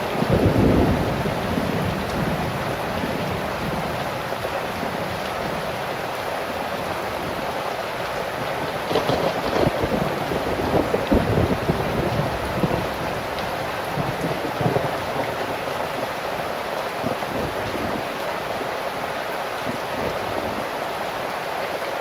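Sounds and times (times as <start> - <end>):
strong wind: 0.0 - 16.2
heavy rain pouring: 0.0 - 22.0.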